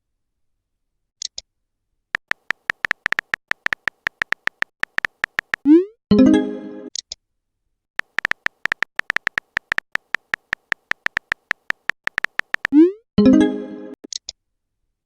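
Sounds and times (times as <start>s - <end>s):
keyboard typing ticks: 2.2s - 5.8s, 8.0s - 12.9s.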